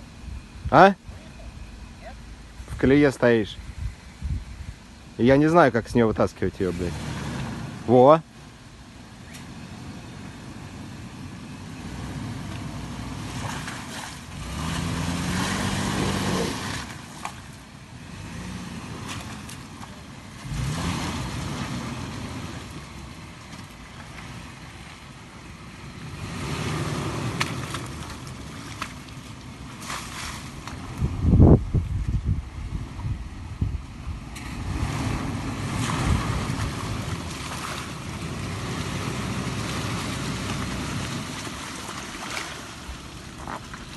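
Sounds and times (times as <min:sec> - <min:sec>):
car engine revving: 0:05.2 - 0:08.1, 0:09.0 - 0:17.3, 0:17.9 - 0:24.9, 0:25.5 - 0:28.8, 0:34.3 - 0:43.6.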